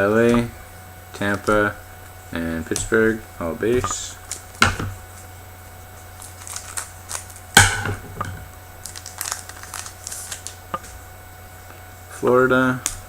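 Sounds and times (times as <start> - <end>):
sharp crackle: 0.2 - 13.0
wrapper crinkling and tearing: 6.2 - 7.4, 8.8 - 10.6.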